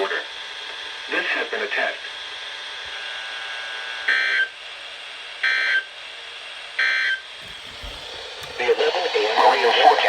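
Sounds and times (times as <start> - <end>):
radio hiss: 7.5 - 10.0.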